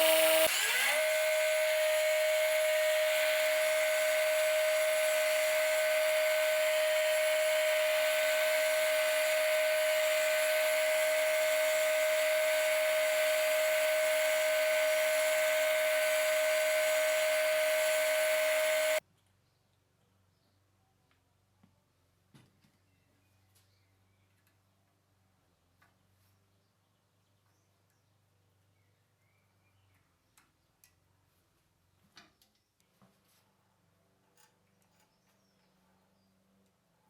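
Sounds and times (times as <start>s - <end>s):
electric power tool whining: 0.0s - 19.0s.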